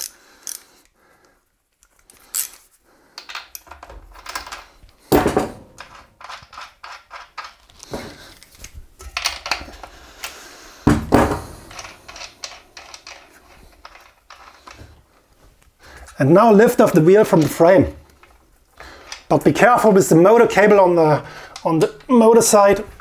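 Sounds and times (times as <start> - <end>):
wrench clicking on nuts: 0.0 - 0.8, 1.8 - 2.6
metal clunks: 3.8 - 6.2.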